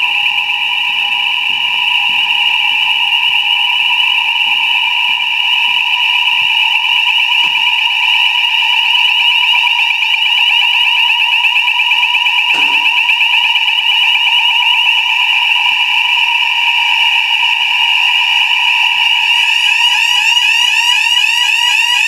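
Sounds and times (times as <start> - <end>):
fire alarm warbling tone: 12.5 - 13.2, 18.6 - 22.0.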